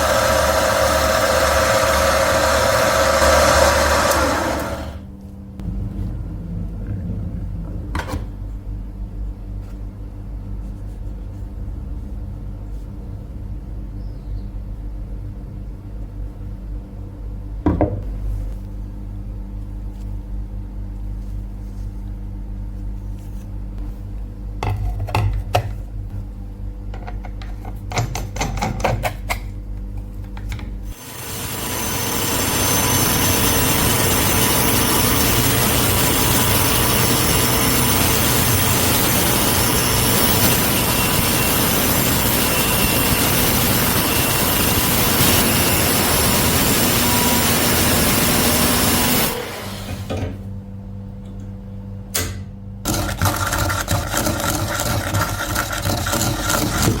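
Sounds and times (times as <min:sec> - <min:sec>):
electric motor humming: 0:00.0 - 0:05.7, 0:30.9 - 0:50.2
hissing grind: 0:31.0 - 0:49.9.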